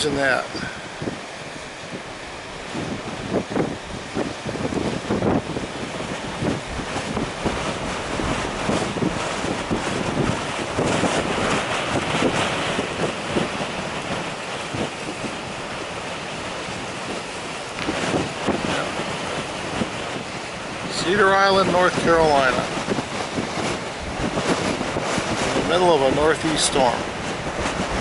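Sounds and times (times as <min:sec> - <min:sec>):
storm waves breaking on shore: 0:00.0 - 0:28.0
wind buffeting microphone: 0:00.0 - 0:28.0.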